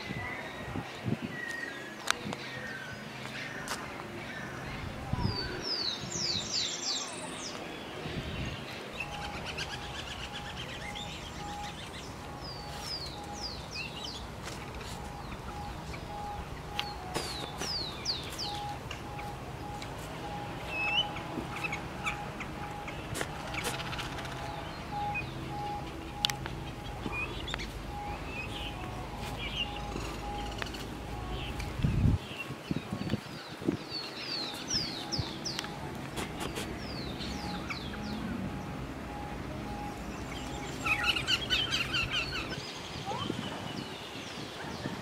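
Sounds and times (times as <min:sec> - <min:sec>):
birds chirping: 0:00.0 - 0:45.0
faint pulsing tone: 0:09.0 - 0:32.3, 0:36.8 - 0:42.0
falling chirp series: 0:09.0 - 0:32.5, 0:34.4 - 0:42.6.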